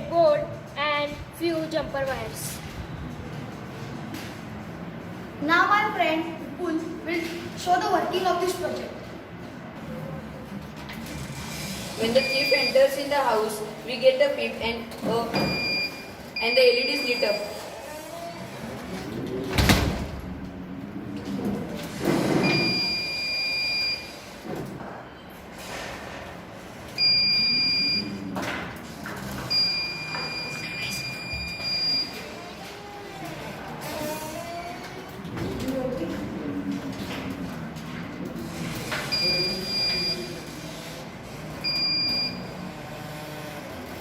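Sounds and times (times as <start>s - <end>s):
alarm buzzer beeping: 12.1s - 13.0s, 15.3s - 17.7s, 22.4s - 24.3s, 27.0s - 28.2s, 29.5s - 32.2s, 39.1s - 40.4s, 41.6s - 42.6s.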